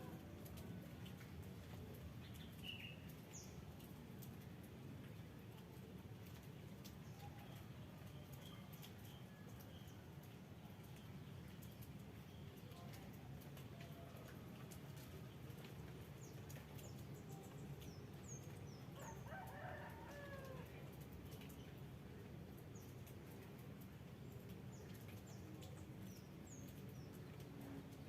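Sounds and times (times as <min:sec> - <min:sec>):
distant rooster crowing: 0:19.0 - 0:20.7.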